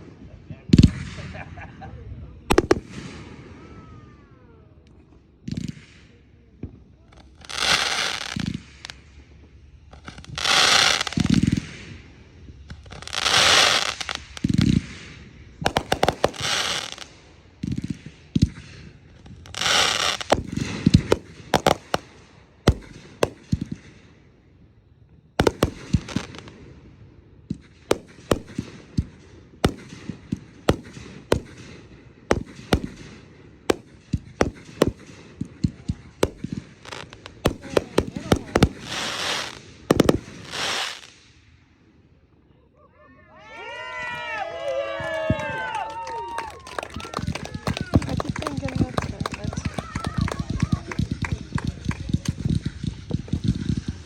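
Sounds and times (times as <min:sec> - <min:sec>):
fireworks hissing bursts: 0:02.3 - 0:04.4, 0:07.0 - 0:24.6, 0:25.3 - 0:41.4, 0:47.9 - 0:54.0
fireworks popping and cracking: 0:02.4 - 0:04.1, 0:04.8 - 0:24.3, 0:25.3 - 0:41.4, 0:45.0 - 0:54.0.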